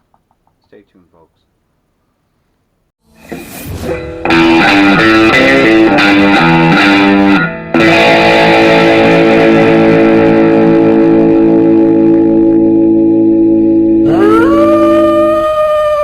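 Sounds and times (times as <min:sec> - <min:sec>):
distorted electric guitar: 0:03.0 - 0:16.0.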